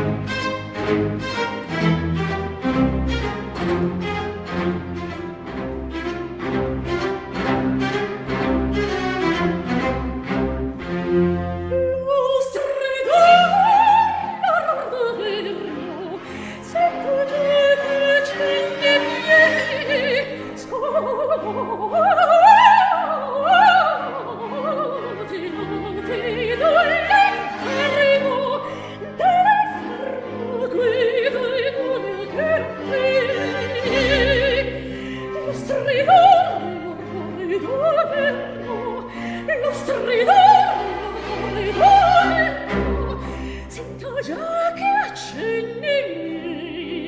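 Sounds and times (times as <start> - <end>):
orchestral accompaniment: 0.0 - 47.0
soprano singing opera: 11.7 - 47.0.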